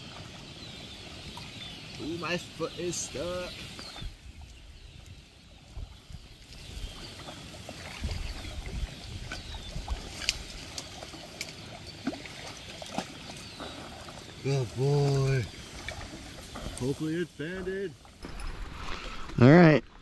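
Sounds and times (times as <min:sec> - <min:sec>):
shallow water sloshing and splashing: 0:00.0 - 0:20.0.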